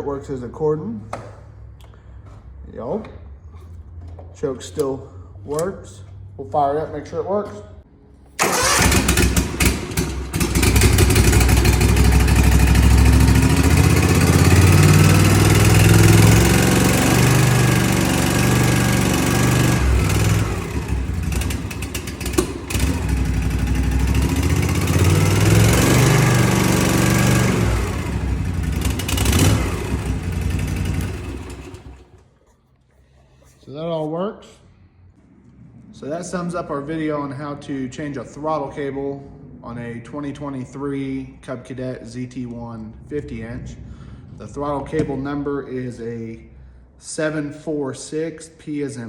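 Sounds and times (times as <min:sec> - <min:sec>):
mower engine revving: 0:08.4 - 0:32.2.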